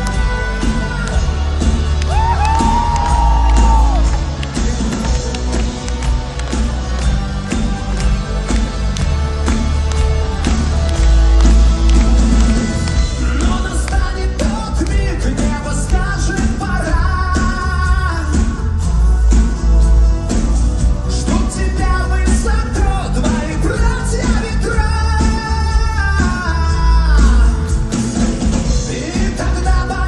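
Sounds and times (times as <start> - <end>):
live rock-pop band: 0.0 - 30.0.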